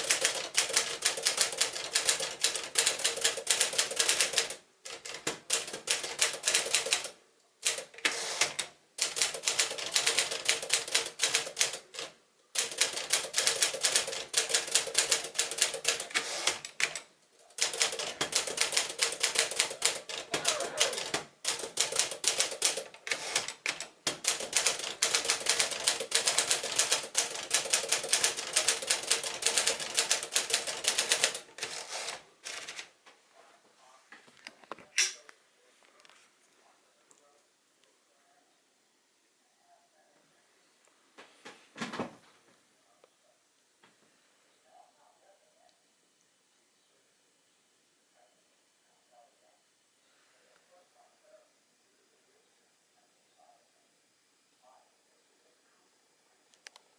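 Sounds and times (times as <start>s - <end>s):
typewriter keys clacking: 0.0s - 17.0s, 17.6s - 32.9s.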